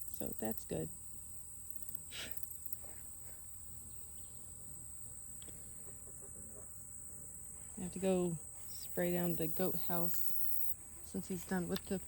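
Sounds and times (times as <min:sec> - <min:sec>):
insect chorus drone: 0:00.0 - 0:12.0.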